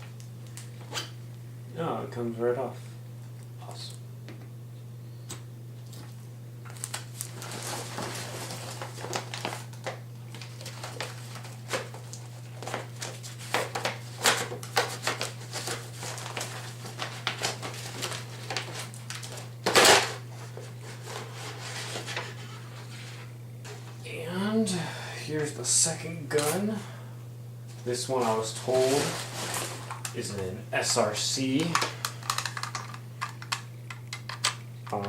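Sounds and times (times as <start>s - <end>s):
low electrical hum: 0.0s - 35.0s
packing paper rustling: 6.7s - 23.0s, 27.7s - 35.0s.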